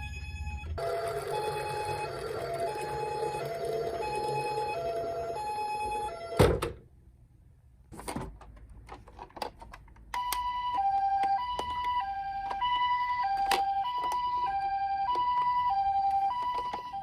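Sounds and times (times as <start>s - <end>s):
toy two-tone siren: 0.0s - 6.4s, 10.2s - 17.0s.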